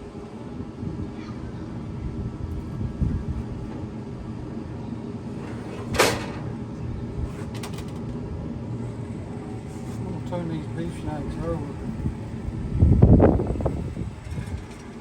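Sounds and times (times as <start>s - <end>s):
steady low rumble: 0.0s - 7.3s, 8.0s - 15.0s.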